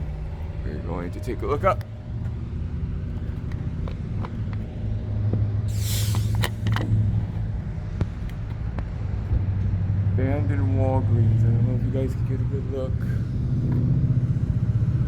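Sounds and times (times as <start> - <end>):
car engine running: 0.0 - 15.0
brief hiss: 5.7 - 6.7.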